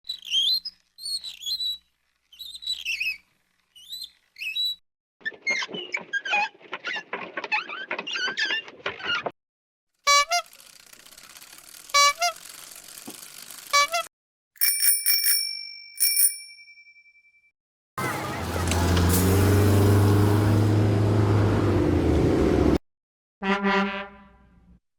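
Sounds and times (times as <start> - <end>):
bicycle bell ringing: 14.6 - 17.5.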